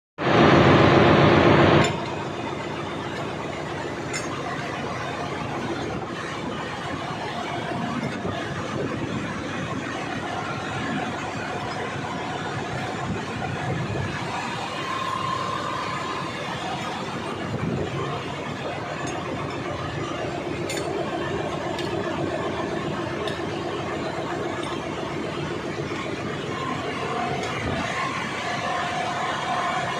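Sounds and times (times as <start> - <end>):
engine room machinery din: 0.2 - 29.9
tools clinking on metal: 20.6 - 21.1.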